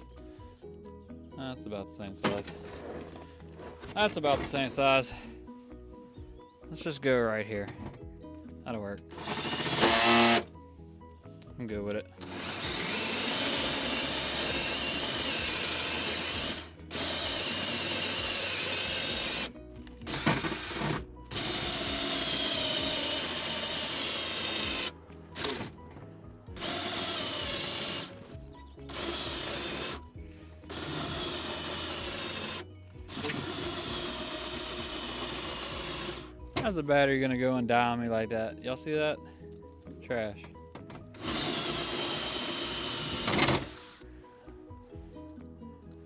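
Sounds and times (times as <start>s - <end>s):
cordless drill whining: 9.0s - 10.6s, 11.9s - 36.8s, 41.1s - 44.4s.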